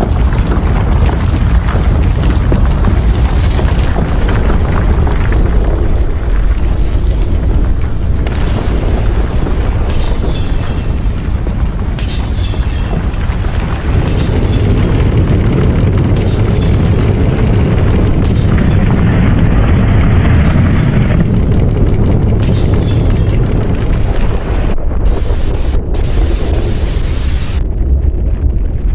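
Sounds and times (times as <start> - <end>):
deep rumble: 0.0 - 28.9
rattling: 9.9 - 24.2.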